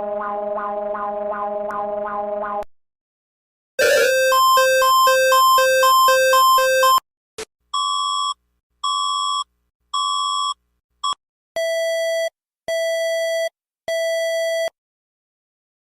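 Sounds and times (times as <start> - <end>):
alternating two-pitch alarm: 3.8 - 7.0.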